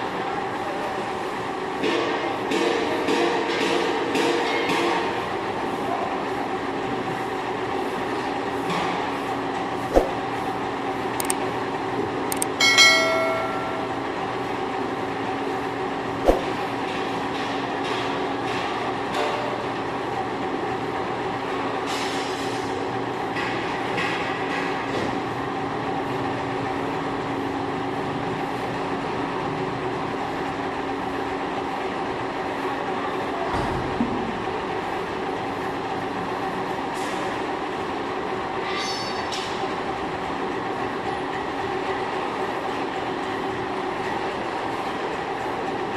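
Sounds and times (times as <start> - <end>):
bright metallic ring: 12.6 - 14.3, 38.7 - 39.3
sharp knock: 16.3 - 16.6.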